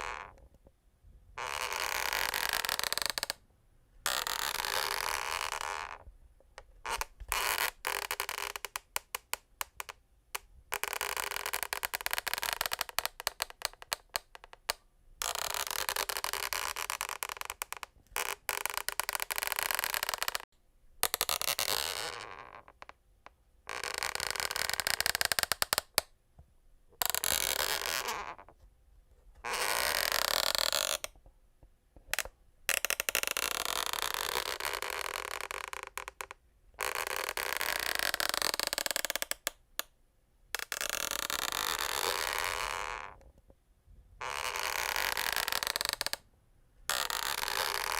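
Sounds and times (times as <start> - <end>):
wooden floor creaking: 0.0 - 0.5, 1.4 - 3.4, 4.1 - 6.1, 15.5 - 20.5, 23.8 - 26.0, 44.2 - 46.2.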